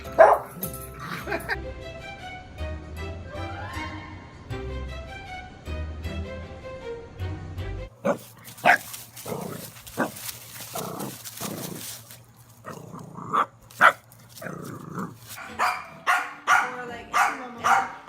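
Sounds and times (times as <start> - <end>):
music: 0.0 - 12.0, 14.3 - 18.0
dog barking: 0.1 - 0.6, 8.0 - 9.4, 13.3 - 14.1, 15.4 - 18.0.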